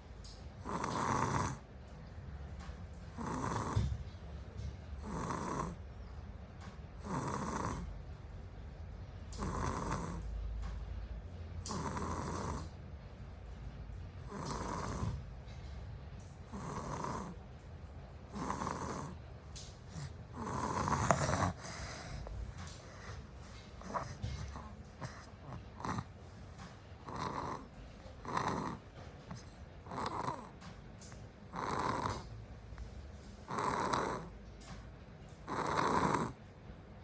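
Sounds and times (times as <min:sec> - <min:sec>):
child snoring: 0:00.6 - 0:01.6, 0:03.2 - 0:04.0, 0:05.0 - 0:05.8, 0:07.0 - 0:07.9, 0:09.4 - 0:10.2, 0:11.7 - 0:12.7, 0:14.3 - 0:15.2, 0:16.5 - 0:17.4, 0:18.3 - 0:19.2, 0:20.0 - 0:22.3, 0:23.8 - 0:26.1, 0:27.0 - 0:30.5, 0:31.5 - 0:32.3, 0:33.5 - 0:34.3, 0:35.5 - 0:36.4.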